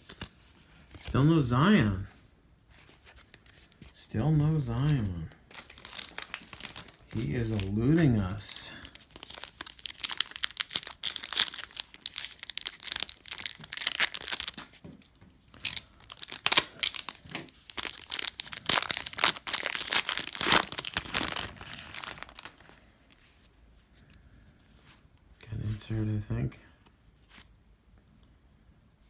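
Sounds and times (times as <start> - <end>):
plastic wrapper tearing and crinkling: 4.7 - 23.1.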